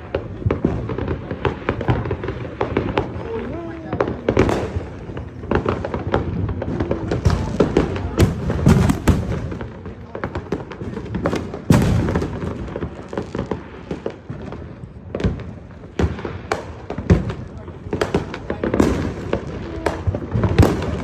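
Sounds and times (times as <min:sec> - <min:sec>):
fireworks popping and crackling: 0:00.0 - 0:21.0
heavy firework bangs: 0:00.0 - 0:21.0.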